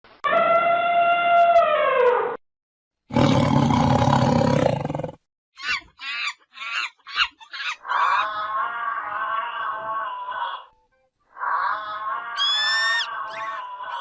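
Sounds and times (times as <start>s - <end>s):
animal roaring: 3.1s - 5.2s, 8.2s - 10.7s, 11.4s - 12.4s
long animal cry: 5.6s - 14.0s.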